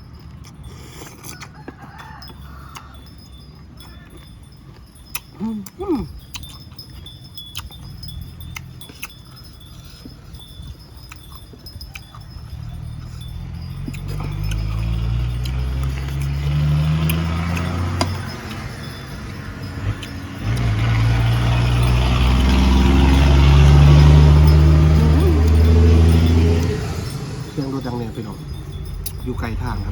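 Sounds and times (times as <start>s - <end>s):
vehicle engine running: 7.8s - 29.9s.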